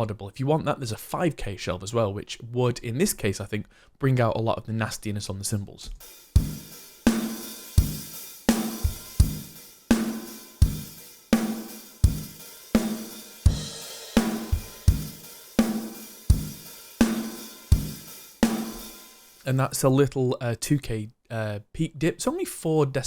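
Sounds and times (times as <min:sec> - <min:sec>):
acoustic drum kit groove: 0:06.0 - 0:19.6.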